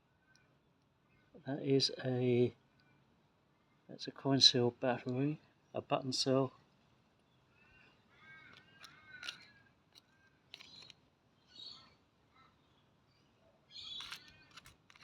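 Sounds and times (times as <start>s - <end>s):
faint bird calls: 7.4s - 12.8s
objects clicking and rustling: 8.4s - 11.0s, 13.9s - 15.0s.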